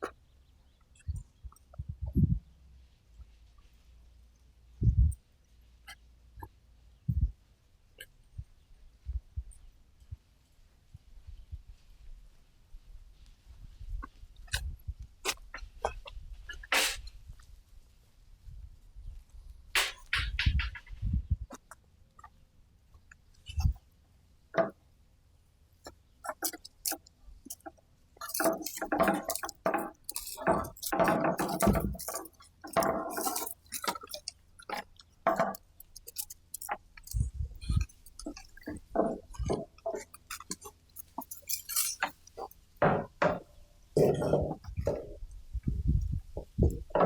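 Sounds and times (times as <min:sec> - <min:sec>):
metal fencing hardware clinking: 0:26.3 - 0:43.4.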